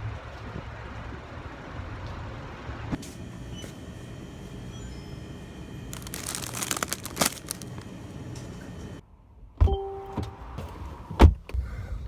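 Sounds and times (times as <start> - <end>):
crinkling rustling handling noise: 5.9 - 7.9.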